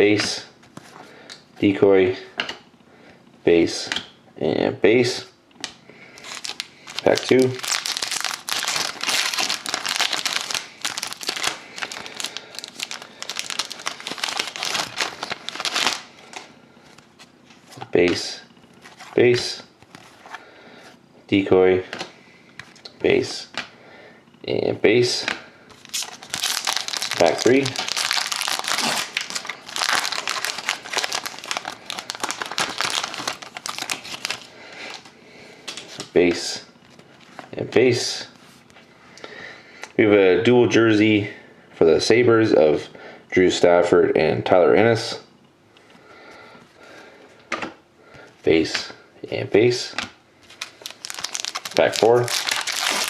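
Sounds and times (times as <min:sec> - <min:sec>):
wrapper crackling and rustling: 0:06.2 - 0:16.5, 0:25.8 - 0:35.1, 0:50.4 - 0:53.0.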